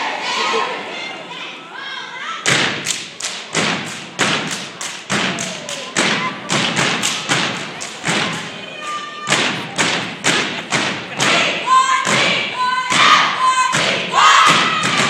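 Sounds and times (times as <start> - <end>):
people stomping: 2.5 - 8.6, 9.2 - 15.0
people clapping: 2.7 - 15.0.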